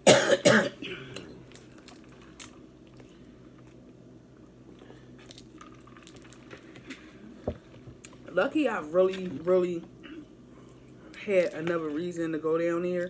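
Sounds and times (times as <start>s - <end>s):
close-miked chewing and crunching: 1.2s - 8.3s.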